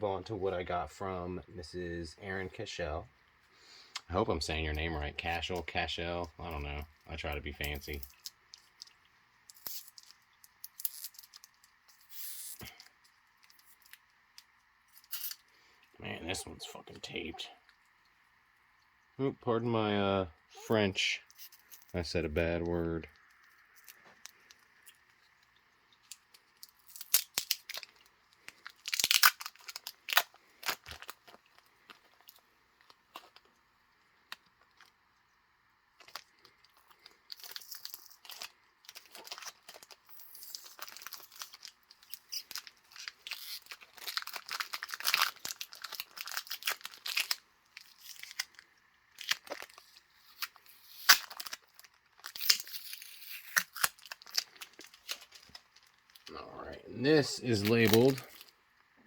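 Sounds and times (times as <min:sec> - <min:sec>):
plastic and paper crinkling: 0:05.1 - 0:15.9, 0:23.1 - 0:33.6, 0:36.0 - 0:56.3, 0:57.0 - 0:58.6
packing tape tearing: 0:09.5 - 0:15.5, 0:26.0 - 0:32.4, 0:37.0 - 0:56.3, 0:57.4 - 0:58.5.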